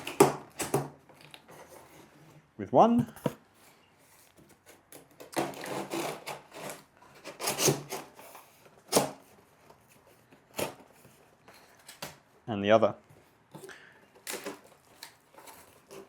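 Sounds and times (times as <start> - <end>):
cardboard scraping and rubbing: 0.0 - 2.4, 3.6 - 11.3, 14.4 - 16.0.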